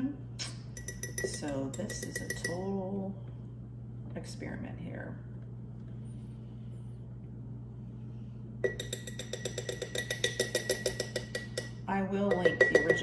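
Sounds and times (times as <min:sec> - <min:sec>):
steady low hum: 0:00.0 - 0:13.0
metal spoon clinking on glass jar: 0:00.8 - 0:02.6, 0:08.6 - 0:13.0.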